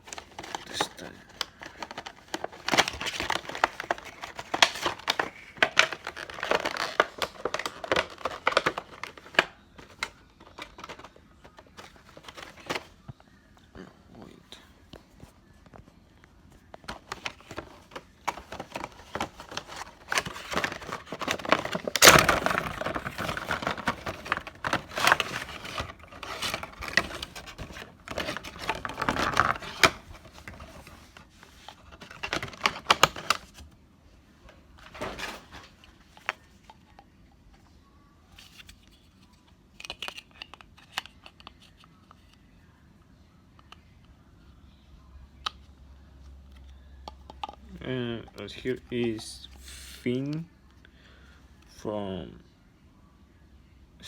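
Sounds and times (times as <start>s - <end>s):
cardboard and plastic crinkling: 0.0s - 13.1s, 16.5s - 33.8s, 34.8s - 36.8s
packaging clicks: 0.1s - 12.9s, 16.8s - 30.8s, 31.9s - 33.6s.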